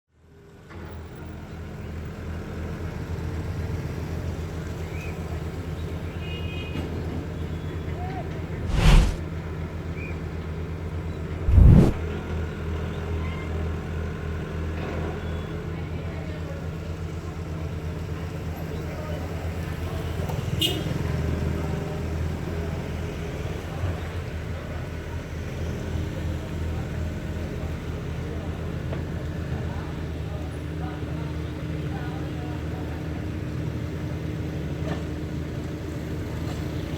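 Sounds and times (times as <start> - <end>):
street noise: 8.6 - 9.2, 11.4 - 12.0.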